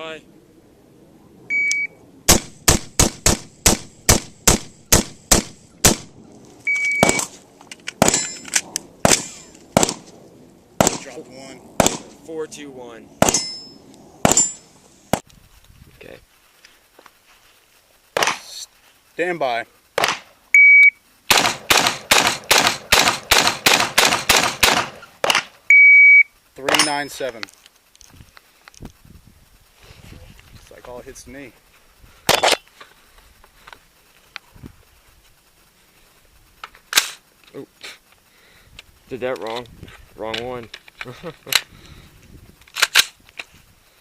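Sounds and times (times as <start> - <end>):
shot timer beep: 1.5 - 2.0
rifle gunshots: 2.3 - 6.2, 7.0 - 7.4, 8.0 - 8.4, 9.0 - 10.1, 10.8 - 12.2, 13.2 - 14.6, 18.2 - 18.5, 20.0 - 20.3, 21.3 - 25.6.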